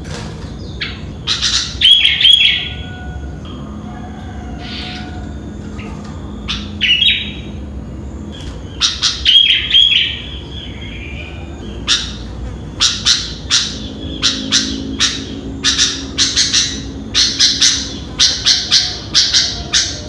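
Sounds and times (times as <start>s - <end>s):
steady low hum: 0.0s - 20.0s
bulbul chirping and whistling: 0.6s - 3.7s, 8.3s - 20.0s.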